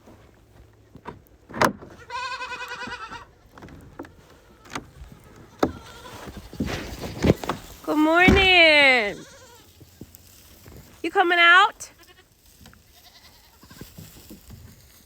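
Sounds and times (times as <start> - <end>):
baby goat bleating: 2.0 - 3.3, 4.1 - 6.7, 7.9 - 9.7, 11.7 - 12.3, 12.9 - 13.9.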